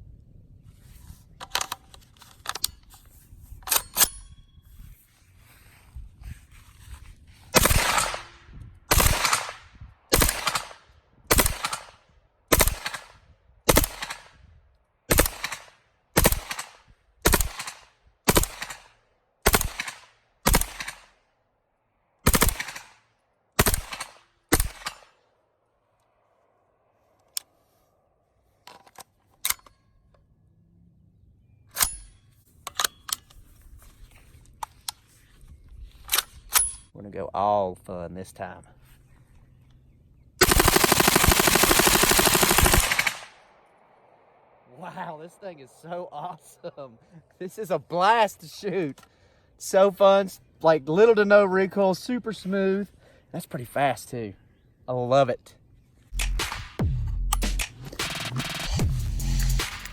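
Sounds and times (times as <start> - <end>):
carbine gunshots: 7.6 - 14.4, 15.1 - 21.2, 22.2 - 23.0, 23.6 - 25.2, 40.4 - 44.7.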